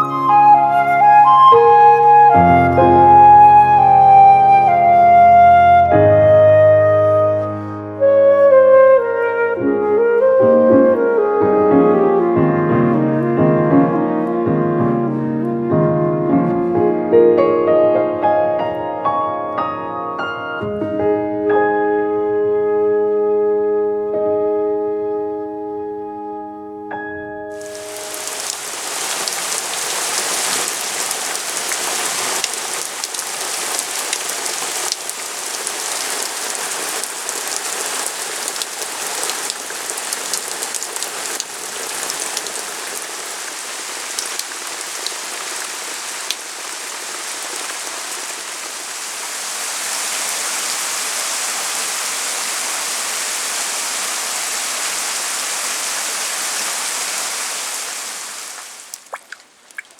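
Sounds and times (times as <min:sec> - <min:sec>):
steady rain: 0:00.0 - 0:06.1, 0:27.5 - 0:59.9.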